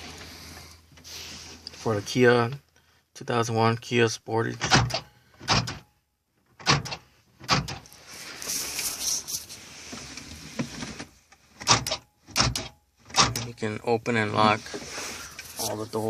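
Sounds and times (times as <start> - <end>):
rustling scraping noise: 0.0 - 2.3, 7.9 - 11.2, 14.3 - 16.0
car door lock clunks: 4.6 - 5.8, 6.6 - 7.9, 11.6 - 13.6.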